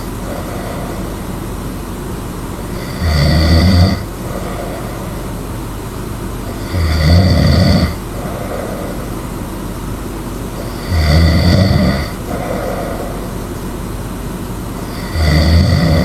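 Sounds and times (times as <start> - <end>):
person snoring: 0.0 - 1.6, 2.6 - 5.6, 6.4 - 9.6, 10.6 - 13.7, 14.7 - 16.0.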